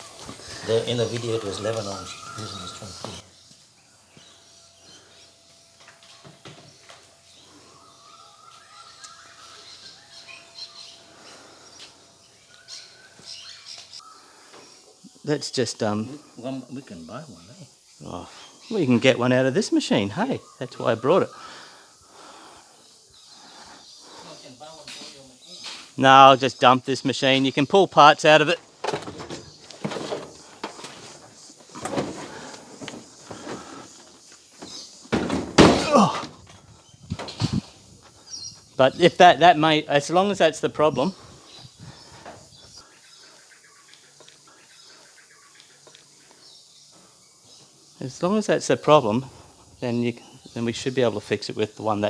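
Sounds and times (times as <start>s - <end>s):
birds chirping and squawking: 0.0s - 15.3s, 16.0s - 26.0s, 27.2s - 51.2s
objects knocking and clunking: 28.7s - 37.6s.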